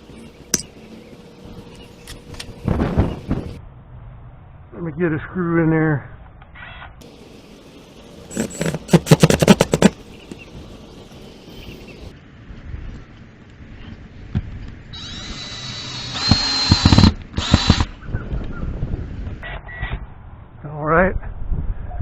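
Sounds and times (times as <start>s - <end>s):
drill motor whining: 15.0s - 17.9s
power drill clicking: 15.0s - 17.9s.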